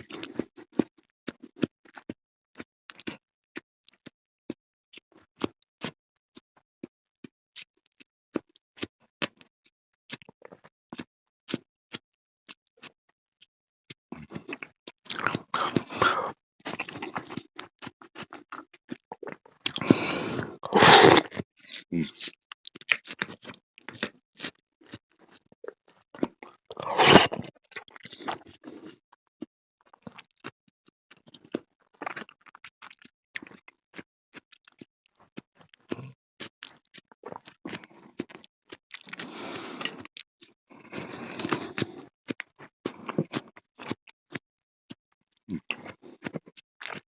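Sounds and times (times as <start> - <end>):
wet chewing clicks and smacks: 0.0 - 3.2, 14.2 - 20.0, 29.9 - 30.5, 31.2 - 40.2, 40.9 - 44.0, 44.9 - 47.0.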